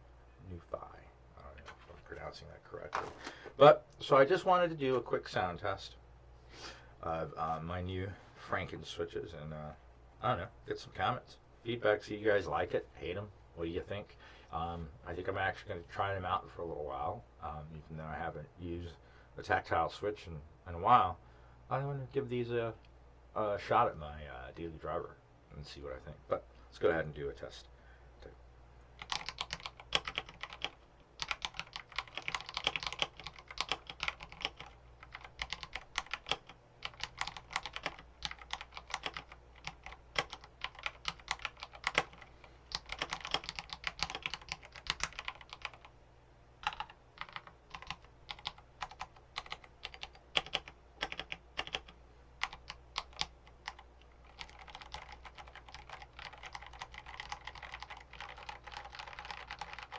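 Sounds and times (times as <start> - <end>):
mechanical keyboard typing: 29.0 - 45.9, 46.6 - 59.9.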